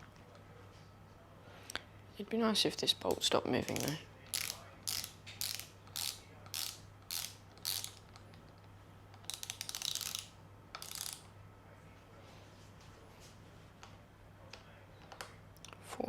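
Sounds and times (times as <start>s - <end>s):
ratchet wrench clicking: 3.7s - 8.0s, 9.2s - 11.2s.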